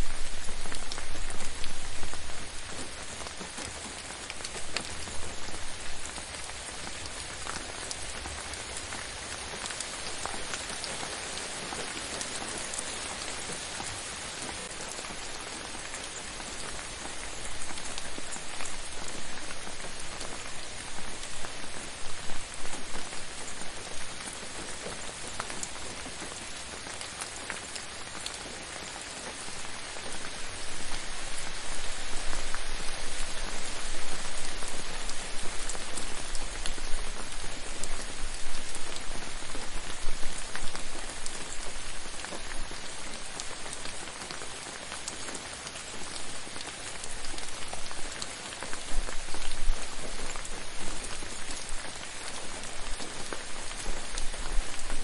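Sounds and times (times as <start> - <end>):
gentle rain falling: 0.0 - 55.0.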